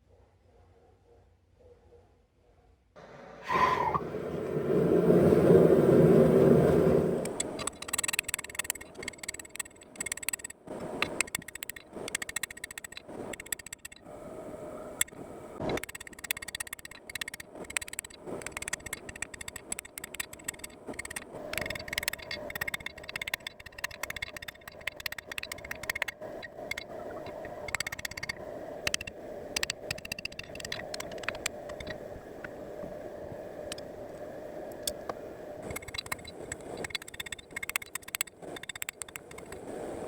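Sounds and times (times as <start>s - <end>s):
light clicks: 7.2s - 14.1s, 14.9s - 32.6s, 33.6s - 40.0s.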